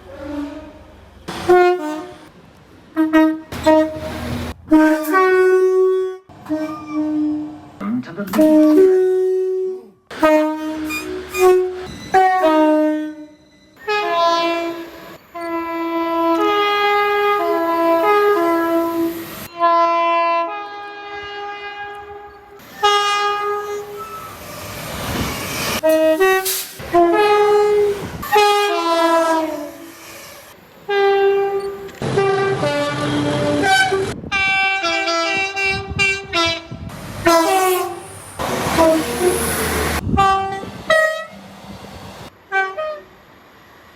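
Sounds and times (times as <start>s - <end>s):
train horn blasts: 0.1s - 2.3s, 2.9s - 7.6s, 8.4s - 24.0s, 25.8s - 30.0s, 30.9s - 41.4s, 42.4s - 43.2s
rushing noise: 37.9s - 42.4s.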